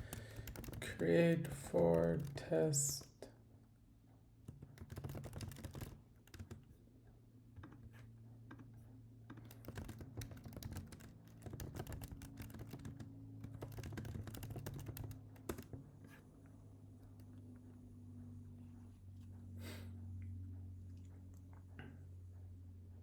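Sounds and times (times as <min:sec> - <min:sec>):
computer keyboard typing: 0:00.0 - 0:03.1, 0:04.5 - 0:06.8, 0:09.3 - 0:15.8.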